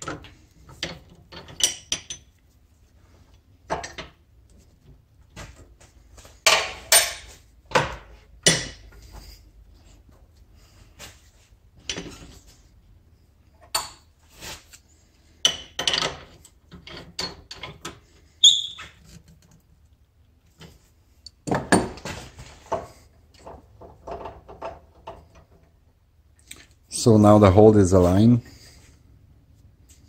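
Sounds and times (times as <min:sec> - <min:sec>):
metal clinks and knocks: 0:00.0 - 0:02.4, 0:06.4 - 0:09.0.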